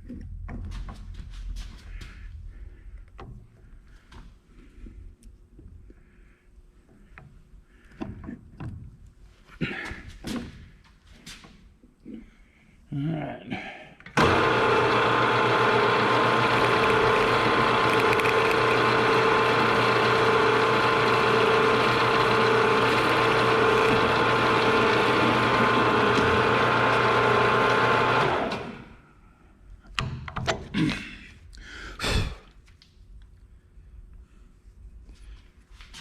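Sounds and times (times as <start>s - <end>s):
drill press motor running: 14.2s - 29.0s
motor spinning down: 14.2s - 29.0s.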